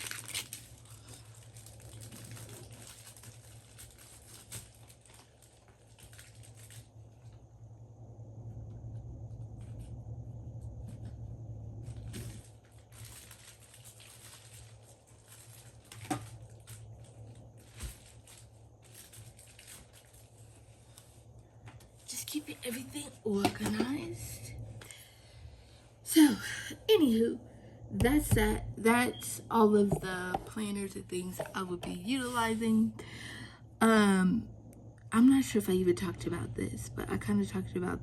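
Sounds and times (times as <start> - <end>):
low hum: 6.6 - 13.8, 20.0 - 38.0.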